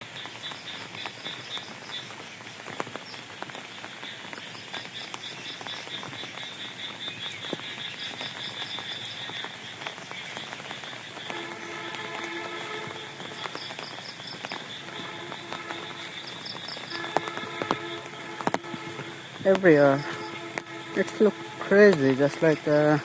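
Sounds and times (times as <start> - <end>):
frogs croaking: 0.0 - 23.0
steady rain: 0.0 - 23.0
water drips: 0.1 - 23.0.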